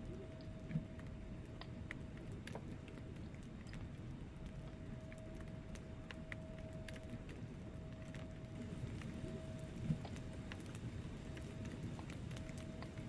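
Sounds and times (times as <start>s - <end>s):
faint steady tone: 0.0s - 13.0s
logs crackling and popping: 0.0s - 13.0s
low rumble of flames: 0.0s - 13.0s.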